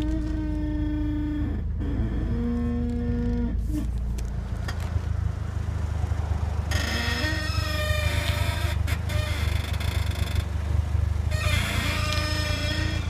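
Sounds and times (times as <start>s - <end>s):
car creaking groans: 0.0s - 13.0s
low engine rumble: 0.0s - 13.0s.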